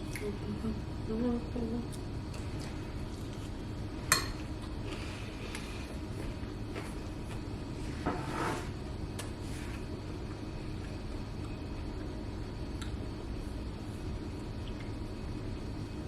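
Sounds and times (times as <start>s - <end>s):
steady low hum: 0.0s - 16.0s
knock with scrape: 8.0s - 8.7s.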